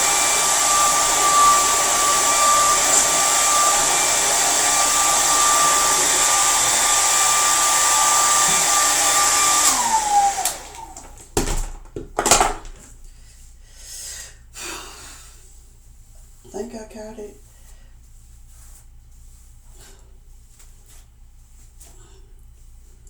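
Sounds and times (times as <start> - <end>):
hair dryer blowing with whine: 0.0 - 11.3.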